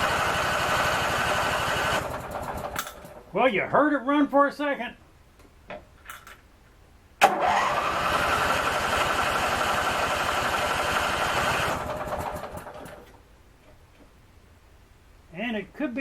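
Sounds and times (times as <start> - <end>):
electric starter cranking engine: 0.0 - 3.2, 7.2 - 13.2.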